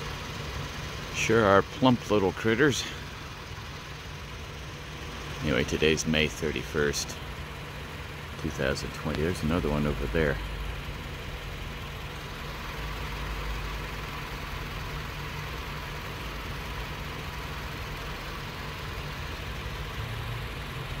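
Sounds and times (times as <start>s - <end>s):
vehicle engine idling: 0.0s - 21.0s.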